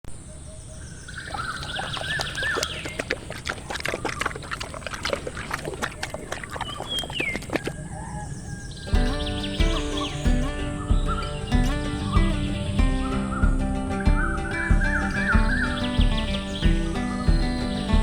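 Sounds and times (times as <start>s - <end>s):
wavering bird chirps: 0.4s - 3.2s, 6.5s - 18.0s.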